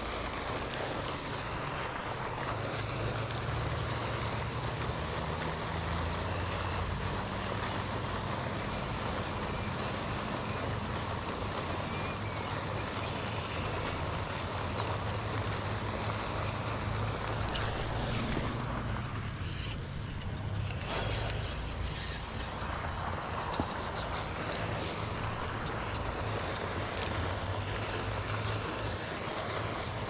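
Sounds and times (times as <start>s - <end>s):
low outdoor rumble: 0.0s - 30.0s
bird chirping: 5.8s - 10.8s, 11.7s - 14.7s.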